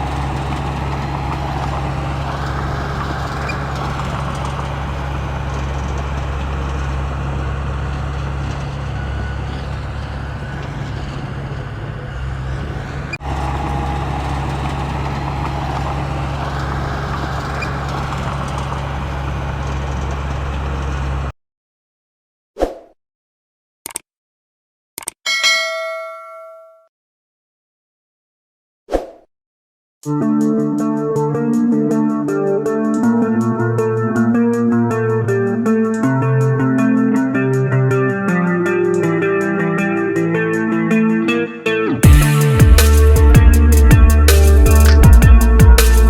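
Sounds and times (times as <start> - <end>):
diesel engine running: 0.0 - 21.3, 42.0 - 46.0.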